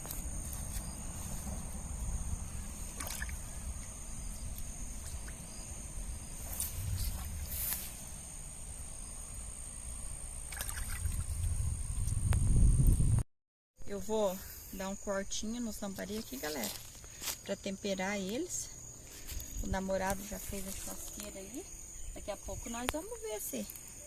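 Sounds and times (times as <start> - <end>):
insects trilling: 0.0 - 12.4, 13.9 - 24.0
low rumble: 1.0 - 13.2.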